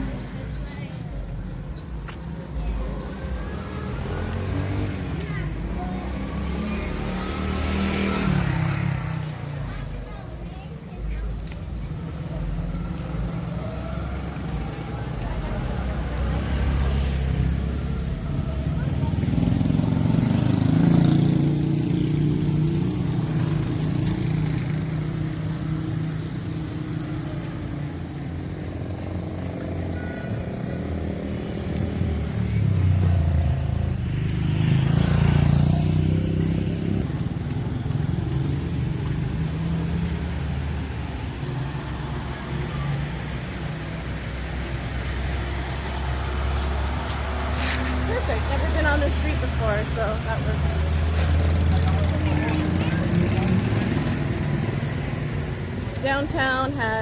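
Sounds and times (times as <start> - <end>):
passing traffic: 0.0 - 57.0
vehicle engine running: 45.3 - 57.0.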